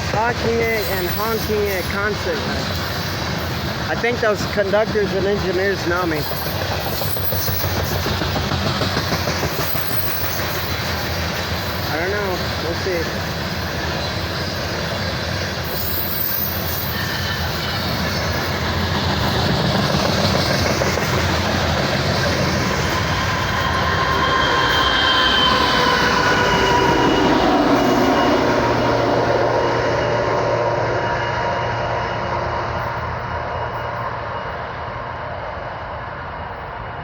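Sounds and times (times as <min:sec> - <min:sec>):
train wheels rumbling on rail: 0:00.0 - 0:37.0
wheel squeal: 0:06.2 - 0:08.1, 0:09.4 - 0:11.9, 0:14.0 - 0:18.3.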